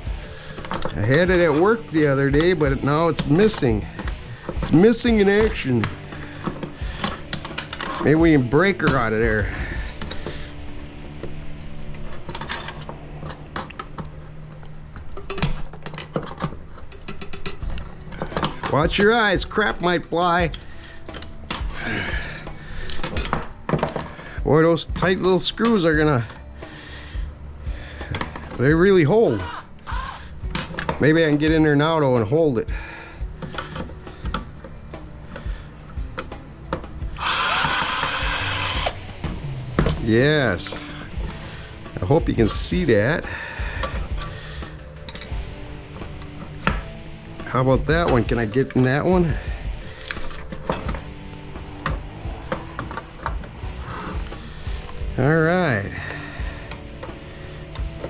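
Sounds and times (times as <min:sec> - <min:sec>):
hand tools clicking on metal: 0:00.4 - 0:26.5, 0:27.9 - 0:39.2, 0:39.8 - 0:58.0
power drill driving screw: 0:29.3 - 0:30.8, 0:37.2 - 0:39.1.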